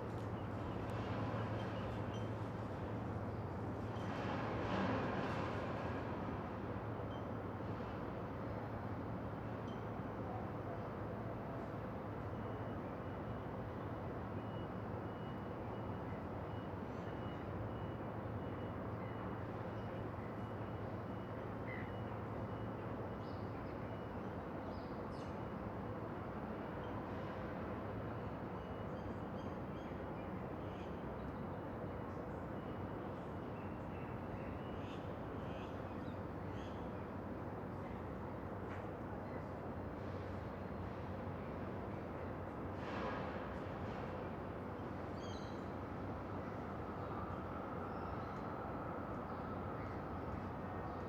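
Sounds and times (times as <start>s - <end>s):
low rumble of traffic and rail: 0.0s - 51.0s
city traffic rumble: 25.6s - 51.0s.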